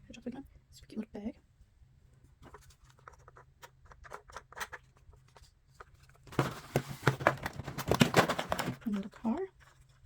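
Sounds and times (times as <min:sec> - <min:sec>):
packaging rustling and crinkling: 0:06.0 - 0:10.0.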